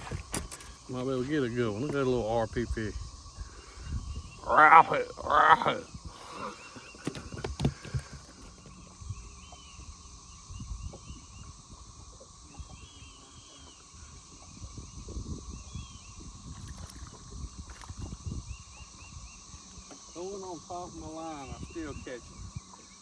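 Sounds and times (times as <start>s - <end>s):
thumps and knocks in a boat: 0.0s - 0.8s, 6.6s - 8.8s
insect drone: 0.0s - 23.0s.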